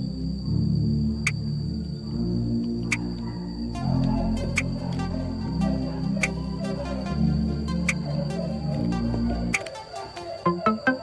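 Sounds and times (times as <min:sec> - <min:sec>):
electronic background music: 0:00.0 - 0:11.0
light regular tick: 0:02.6 - 0:03.3, 0:07.8 - 0:08.1.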